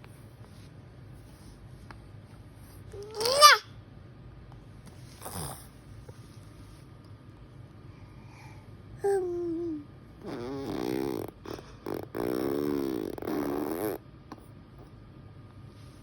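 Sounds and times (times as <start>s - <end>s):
baby cooing: 3.0s - 3.7s, 9.0s - 14.0s
baby squealing: 3.2s - 3.7s.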